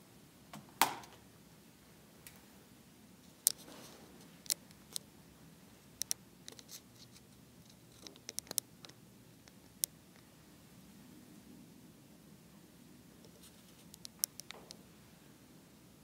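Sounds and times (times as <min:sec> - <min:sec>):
sharp clicks and light taps: 0:06.0 - 0:10.3, 0:13.2 - 0:14.8.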